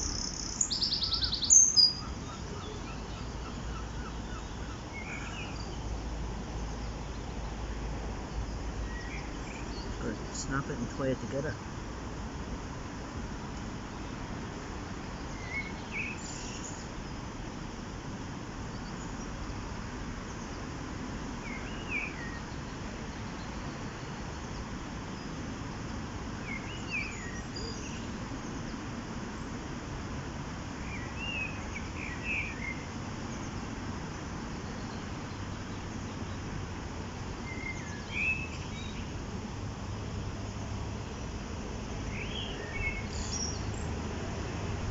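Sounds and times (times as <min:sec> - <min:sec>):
small bird chirping: 0:00.0 - 0:07.6, 0:42.0 - 0:44.0
low rushing background noise: 0:00.0 - 0:44.9.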